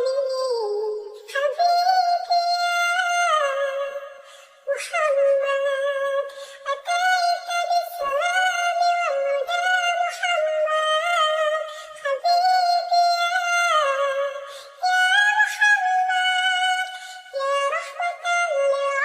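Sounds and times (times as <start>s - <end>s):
synthetic singing voice: 0.0s - 19.0s.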